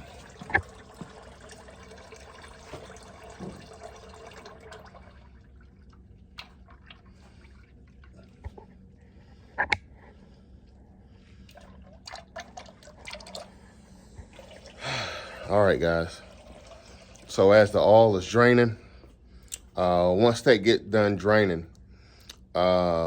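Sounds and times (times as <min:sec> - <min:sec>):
oil pouring into a pan: 0:00.0 - 0:05.4, 0:14.3 - 0:17.8
oil dripping: 0:00.0 - 0:09.1, 0:10.6 - 0:17.9.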